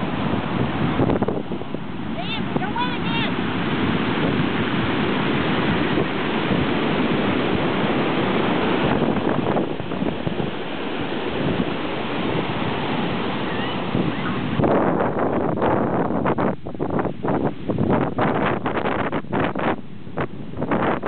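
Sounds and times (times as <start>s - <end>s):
strong wind rushing: 0.0s - 21.0s
surf crashing: 0.0s - 21.0s
wind buffeting microphone: 0.0s - 21.0s.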